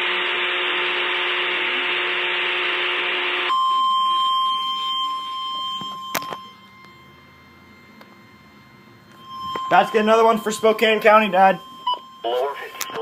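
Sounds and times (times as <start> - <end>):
steady pure alarm tone: 0.0 - 13.0
harsh buzzing data burst: 5.0 - 13.0.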